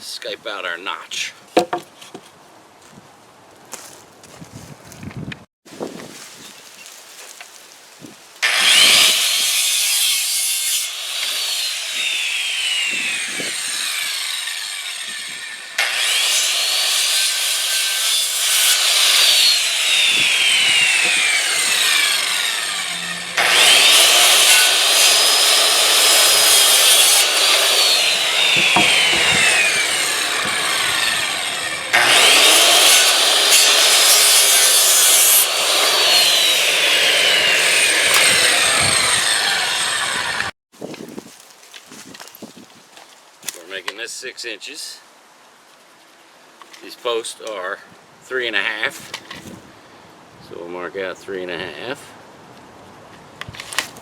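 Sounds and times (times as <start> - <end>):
circular saw cutting wood: 8.4 - 40.6.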